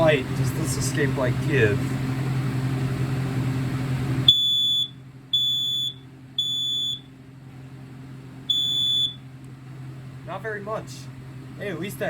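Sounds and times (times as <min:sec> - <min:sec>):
smoke alarm beeping: 0:04.3 - 0:07.1, 0:08.5 - 0:09.2.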